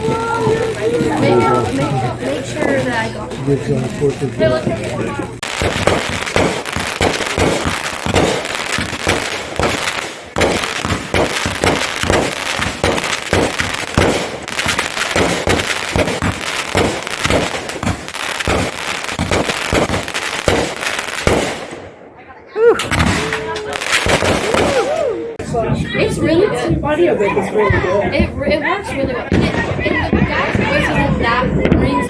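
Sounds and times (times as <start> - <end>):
fireworks popping and crackling: 0.0 - 21.9, 22.8 - 25.1, 27.7 - 32.0.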